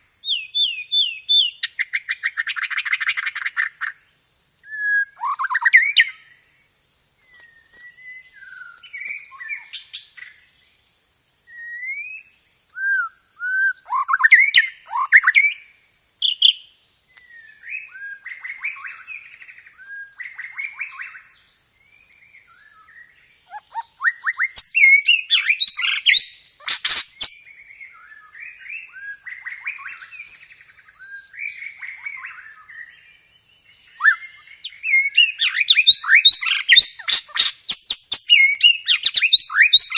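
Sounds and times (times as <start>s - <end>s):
bird singing whistled phrases: 0.2s - 3.7s, 4.6s - 6.3s, 7.4s - 10.3s, 11.5s - 21.4s, 22.4s - 33.1s, 33.7s - 39.9s
mimicked sparrow chatter: 23.4s - 27.5s.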